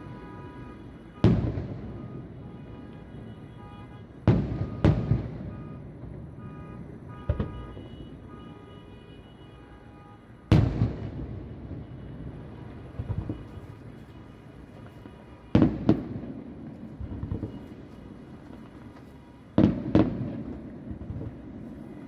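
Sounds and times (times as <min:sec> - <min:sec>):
distant fireworks booms: 0:00.0 - 0:08.5, 0:10.5 - 0:22.0.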